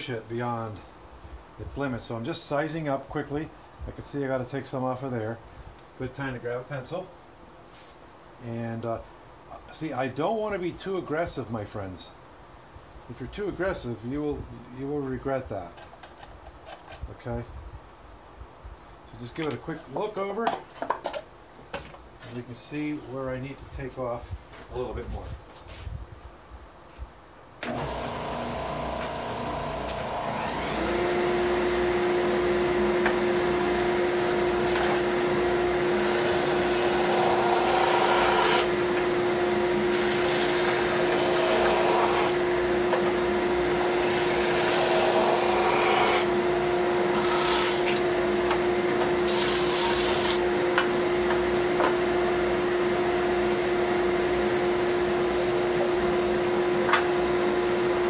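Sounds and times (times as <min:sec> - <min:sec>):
electric sander motor hum: 0:27.7 - 0:58.0
wood hissing against abrasive: 0:47.1 - 0:50.4.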